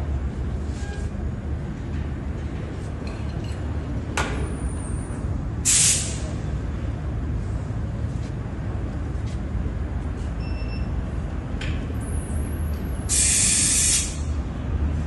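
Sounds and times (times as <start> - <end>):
compressed air hiss blast: 5.6 - 6.3, 13.1 - 14.3
high whistle of escaping air: 13.1 - 14.2.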